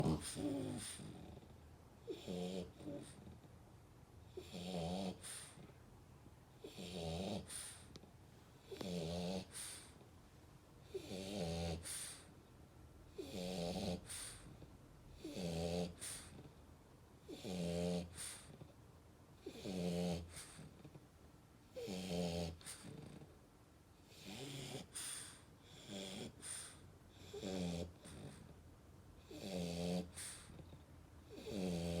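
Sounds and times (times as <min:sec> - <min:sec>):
rhythmic snoring: 0:00.0 - 0:03.4, 0:04.3 - 0:05.6, 0:06.6 - 0:07.9, 0:08.6 - 0:10.0, 0:10.8 - 0:12.3, 0:13.1 - 0:16.6, 0:17.3 - 0:18.7, 0:19.4 - 0:21.0, 0:21.7 - 0:23.3, 0:24.0 - 0:28.6, 0:29.2 - 0:32.0.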